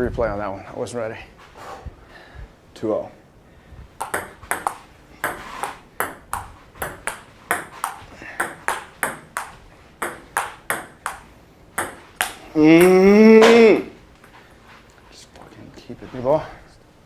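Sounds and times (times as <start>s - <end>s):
table tennis ball clicking: 4.0s - 14.4s.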